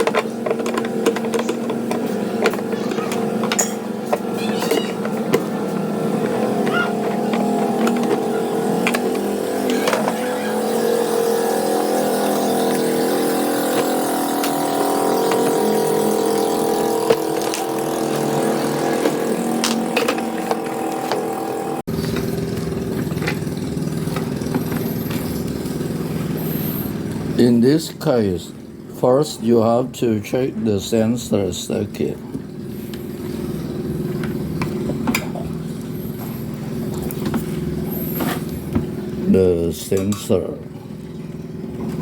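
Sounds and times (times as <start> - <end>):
street traffic drone: 0.0 - 42.0.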